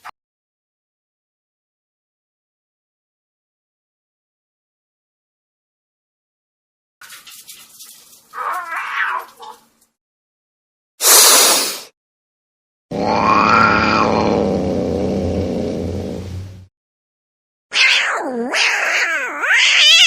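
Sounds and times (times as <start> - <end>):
kitten meowing loudly: 8.4 - 9.6, 17.7 - 20.0
brief hiss-like burst: 11.0 - 11.9.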